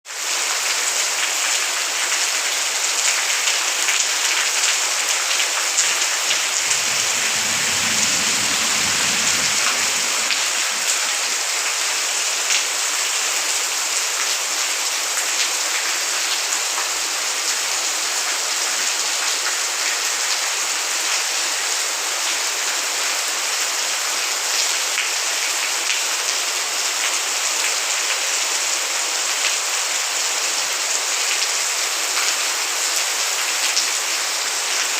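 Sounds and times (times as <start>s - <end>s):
heavy rain pattering: 0.3s - 22.6s
low rumble: 6.2s - 11.9s.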